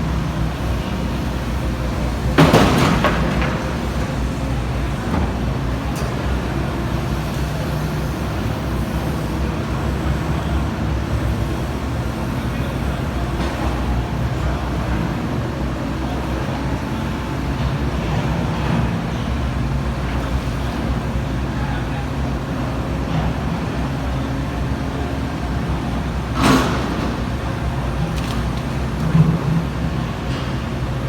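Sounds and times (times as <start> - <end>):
excavator diesel engine drone: 0.0 - 31.0
loud clatter: 1.9 - 4.3.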